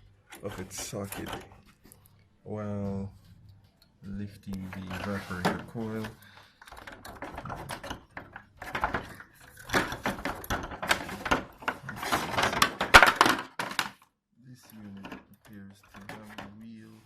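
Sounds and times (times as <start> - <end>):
plastic and metal parts clicking: 3.8 - 14.1.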